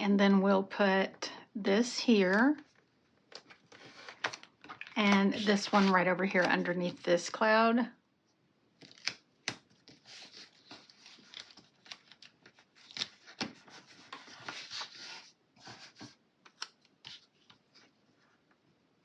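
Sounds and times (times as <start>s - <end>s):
stickers rustling and peeling: 2.2s - 7.6s.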